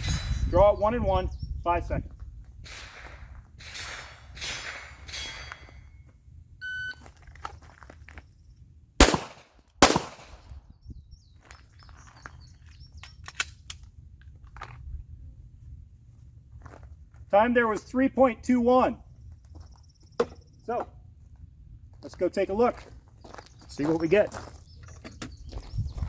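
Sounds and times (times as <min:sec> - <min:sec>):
pistol shots: 0:09.0 - 0:10.6.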